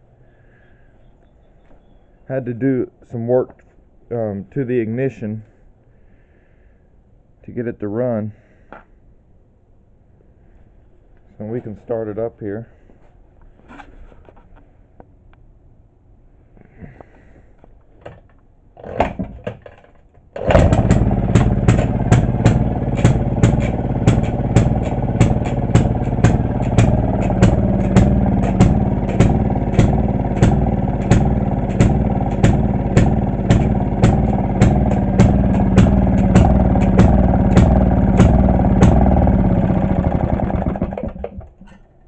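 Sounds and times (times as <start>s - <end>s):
small engine exhaust pops: 20.4s - 41.8s.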